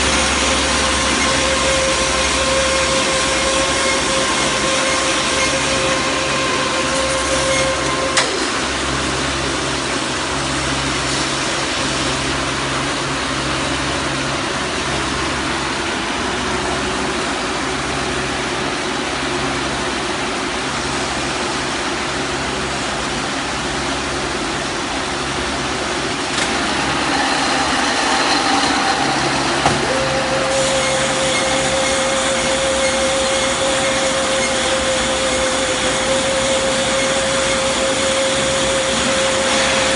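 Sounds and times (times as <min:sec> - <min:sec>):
machine whine: 0:00.0 - 0:15.7, 0:23.9 - 0:39.9.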